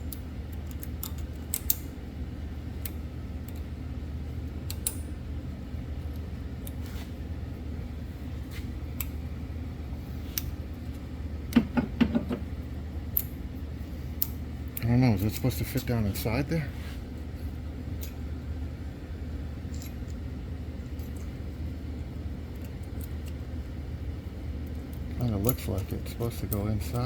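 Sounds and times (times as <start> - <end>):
metallic clicks of brake parts: 0.1 - 1.9, 4.6 - 5.1, 13.1 - 13.4.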